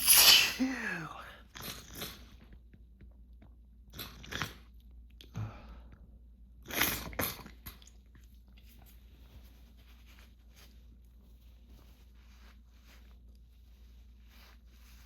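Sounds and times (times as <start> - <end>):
person sniffling: 0.0 - 1.3.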